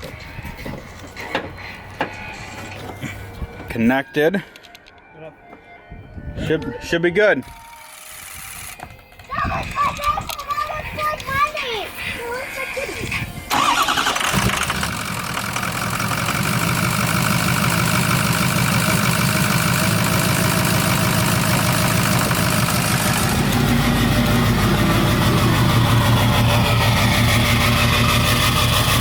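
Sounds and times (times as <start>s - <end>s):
diesel engine starting and idling: 13.4s - 29.0s.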